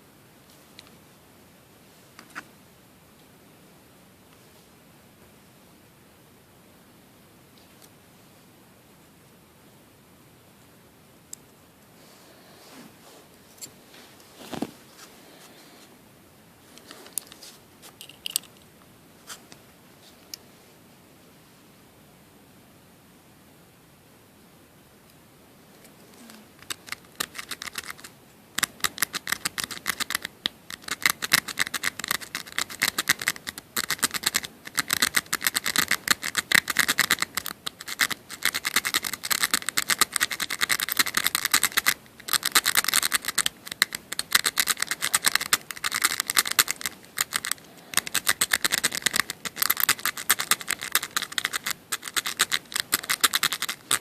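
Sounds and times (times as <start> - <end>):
lock pick scratching and clicking: 18.0 - 18.6, 26.6 - 54.0.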